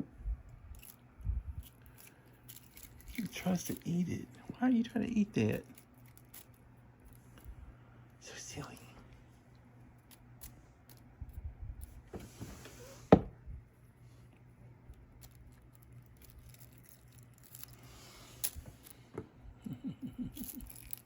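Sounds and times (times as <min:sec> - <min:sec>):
plastic tape crinkling: 0:15.1 - 0:17.8.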